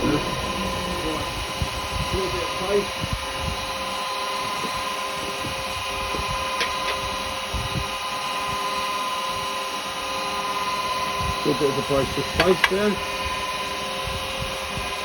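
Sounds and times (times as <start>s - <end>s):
wood lathe whining: 0.0s - 3.0s.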